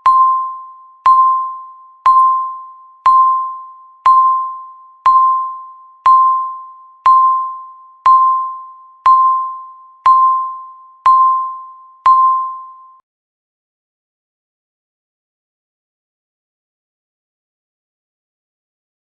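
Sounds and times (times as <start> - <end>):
countdown timer beeping: 0.0 - 13.0.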